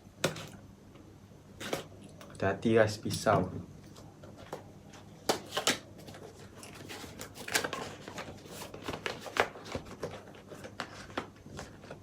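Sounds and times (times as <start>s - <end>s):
cardboard scraping and rustling: 5.4s - 12.0s.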